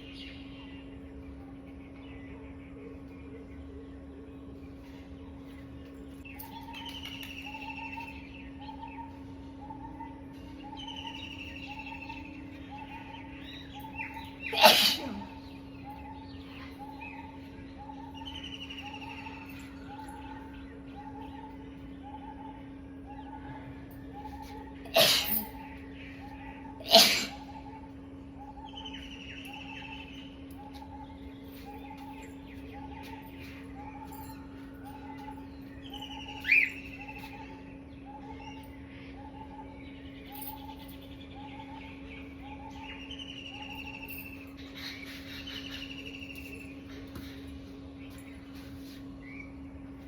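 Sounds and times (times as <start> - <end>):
birds chirping: 0.0 - 50.0
steady low hum: 0.0 - 50.0
person sneezing: 14.5 - 15.3, 24.9 - 25.4, 26.8 - 27.4.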